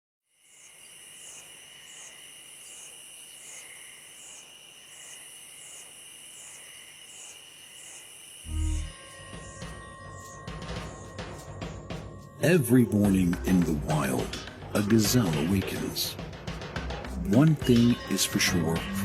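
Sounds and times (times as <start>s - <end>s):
insects chirring: 0.3s - 12.4s
low insect whine: 0.3s - 12.4s.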